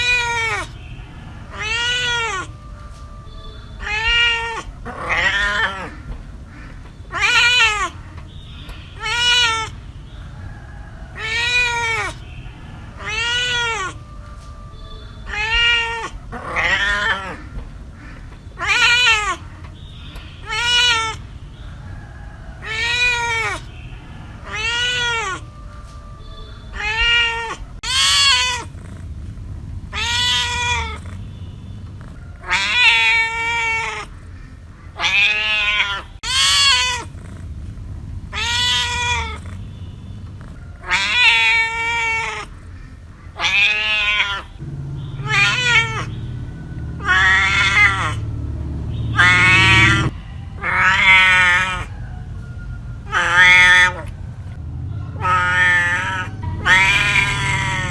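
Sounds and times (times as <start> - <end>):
cat meowing: 0.0 - 9.8, 11.1 - 19.7, 20.4 - 21.3, 22.6 - 29.0, 29.9 - 31.3, 32.0 - 34.2, 34.9 - 37.4, 38.3 - 48.2, 49.1 - 52.0, 53.0 - 54.2, 55.1 - 57.9.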